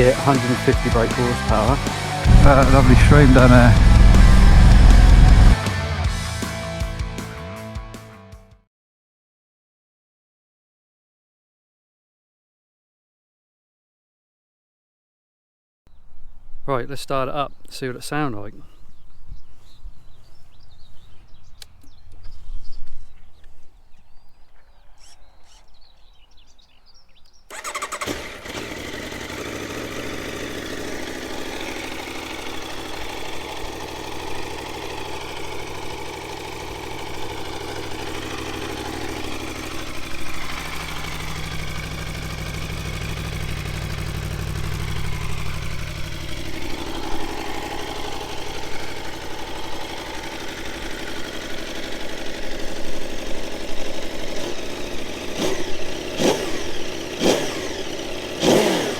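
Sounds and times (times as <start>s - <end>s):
motorcycle engine starting and idling: 0.0s - 7.0s, 24.4s - 58.9s.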